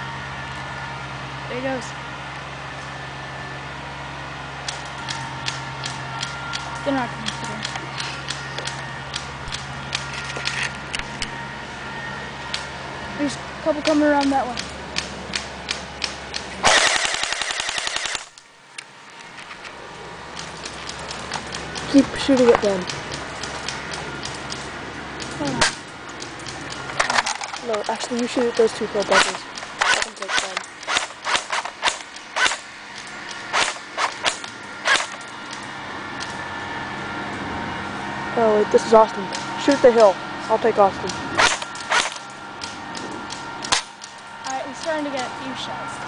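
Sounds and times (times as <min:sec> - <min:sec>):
sharp clicks: 0:04.6 - 0:11.3, 0:13.8 - 0:36.4, 0:41.0 - 0:45.0
airsoft gun shots: 0:16.6 - 0:18.3, 0:29.1 - 0:32.6, 0:33.5 - 0:35.2, 0:41.4 - 0:42.2
airsoft gun full-auto burst: 0:16.6 - 0:18.4, 0:33.5 - 0:35.2.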